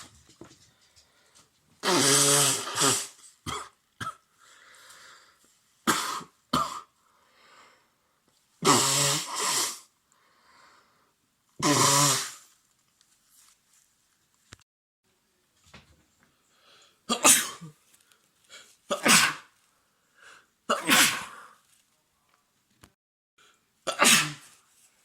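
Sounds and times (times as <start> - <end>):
breathing: 0.6 - 1.6, 4.3 - 5.6, 7.0 - 8.3, 10.1 - 11.2, 16.3 - 17.1, 19.6 - 20.6, 23.4 - 23.7
man coughing: 17.1 - 17.8.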